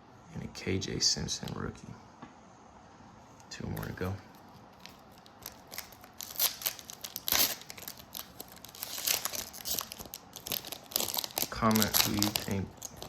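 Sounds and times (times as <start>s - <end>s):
foil wrapper crinkling: 3.7s - 13.0s
foil wrapper tearing: 3.8s - 13.0s.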